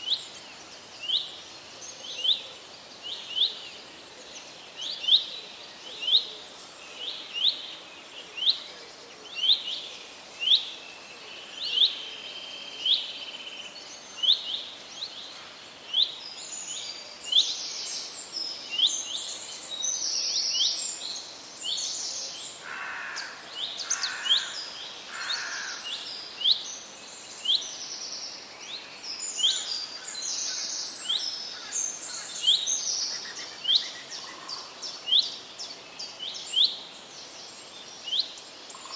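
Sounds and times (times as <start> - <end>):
faint steady hiss: 0.0 - 38.9
birds calling: 22.6 - 26.1.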